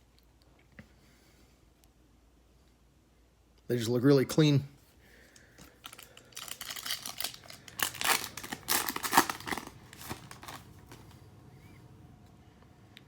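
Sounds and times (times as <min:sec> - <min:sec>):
foil wrapper crinkling and tearing: 0:05.7 - 0:11.2.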